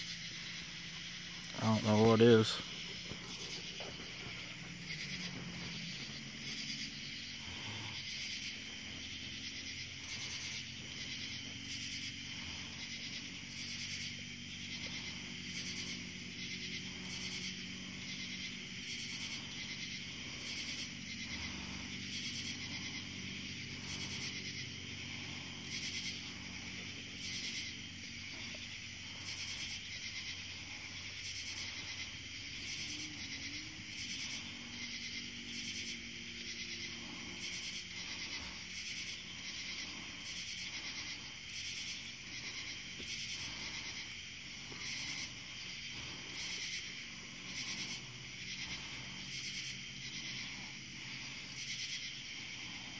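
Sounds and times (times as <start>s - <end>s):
insects chirring: 0.0s - 52.9s.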